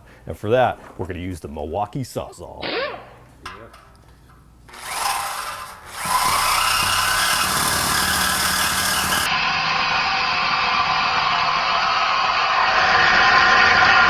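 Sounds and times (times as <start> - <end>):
reciprocating saw cutting pipe: 4.7 - 14.0.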